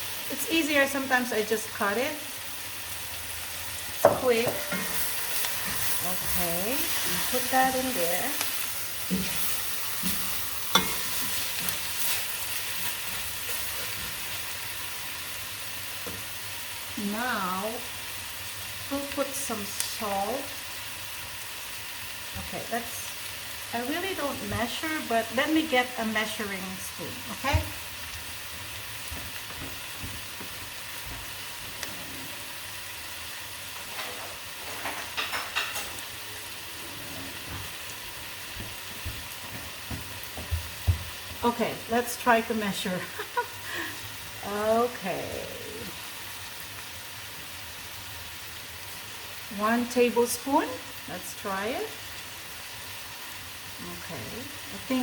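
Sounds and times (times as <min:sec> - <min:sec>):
chicken sizzling in a pot: 0:00.0 - 0:55.0
utensil clinking against pot: 0:10.0 - 0:11.7.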